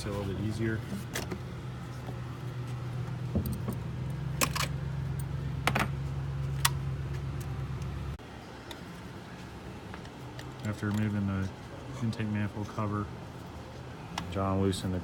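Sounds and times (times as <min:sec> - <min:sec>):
steady low hum: 0:00.0 - 0:15.0
tools clicking and clinking: 0:04.4 - 0:06.0.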